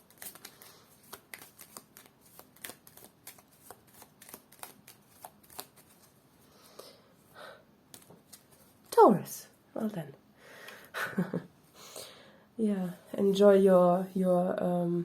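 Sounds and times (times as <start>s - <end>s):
cards being shuffled: 0.0s - 6.2s, 7.9s - 9.0s.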